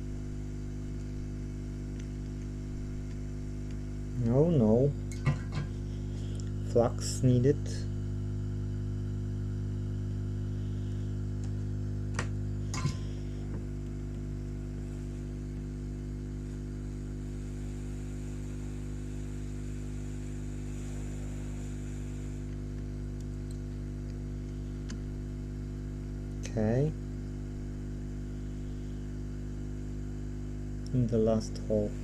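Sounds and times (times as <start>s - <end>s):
electrical hum: 0.0s - 32.0s.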